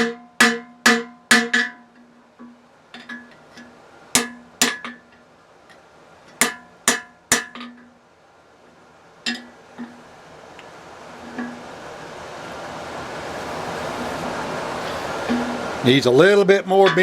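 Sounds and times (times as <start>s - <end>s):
hammer striking hot steel on anvil: 6.4s - 7.5s.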